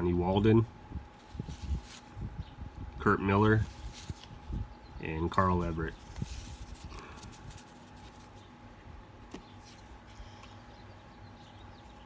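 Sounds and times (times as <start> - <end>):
faint electrical hum: 0.0 - 12.0
cardboard cards rustling and clicking: 3.5 - 4.4, 5.6 - 8.5.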